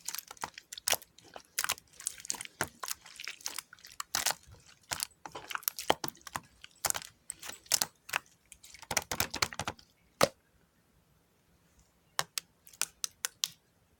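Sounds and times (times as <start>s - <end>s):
slime with beads crunching: 0.0s - 9.8s.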